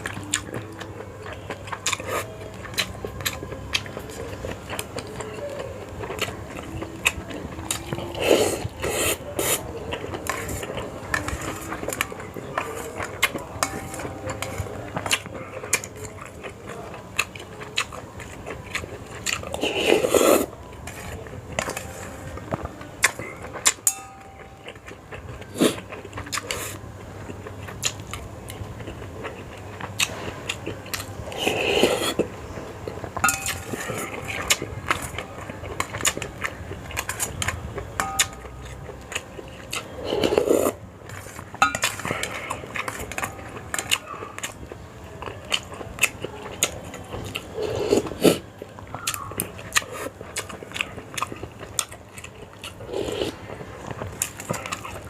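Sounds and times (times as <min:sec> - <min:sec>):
chewing: 0:00.0 - 0:55.0
slurping noodles: 0:08.1 - 0:09.6, 0:19.5 - 0:21.0, 0:31.3 - 0:32.3, 0:40.0 - 0:41.3, 0:47.6 - 0:48.4, 0:52.8 - 0:53.4.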